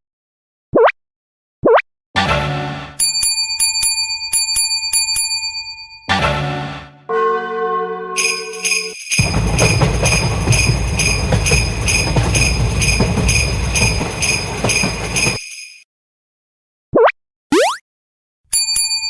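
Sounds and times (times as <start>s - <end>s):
railroad crossing bell clanging: 3.0s - 6.2s, 8.2s - 15.5s, 18.5s - 19.0s
loud low rumbling: 9.2s - 14.4s.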